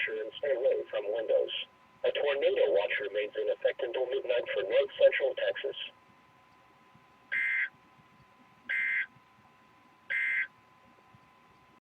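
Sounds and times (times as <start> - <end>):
digital data tone bursts: 10.1 - 10.5.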